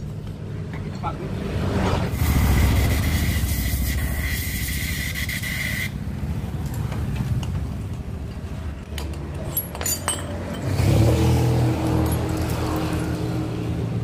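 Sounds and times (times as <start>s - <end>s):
steady low rumble: 1.3s - 8.9s.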